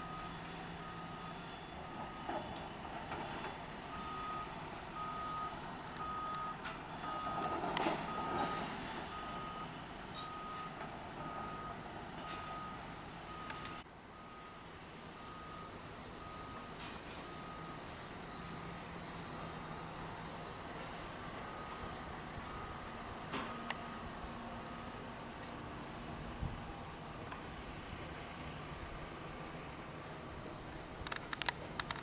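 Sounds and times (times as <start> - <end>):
reversing alarm beeping: 0.0 - 20.1, 21.2 - 25.0
construction site noise: 0.0 - 32.0.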